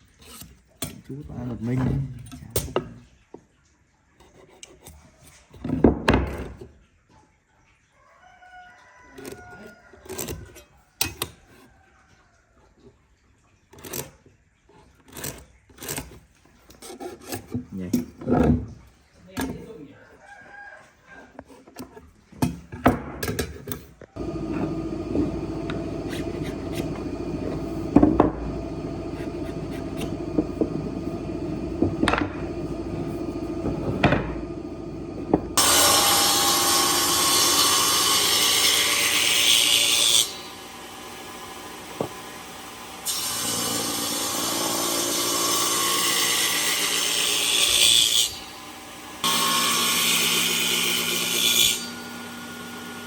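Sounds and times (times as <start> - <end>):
machine running steadily: 24.2 - 37.2
power tool cutting wood: 24.2 - 53.0.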